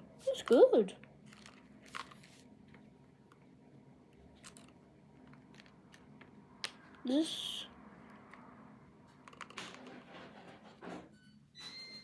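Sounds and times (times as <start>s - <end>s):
toy package crinkling: 1.2s - 2.4s.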